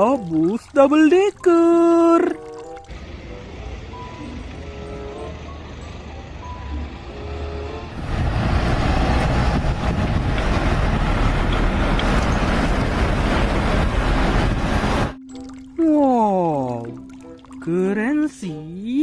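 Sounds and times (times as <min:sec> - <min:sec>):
light background music: 0:00.0 - 0:08.0, 0:15.2 - 0:19.0
large vehicle engine running: 0:02.9 - 0:15.2.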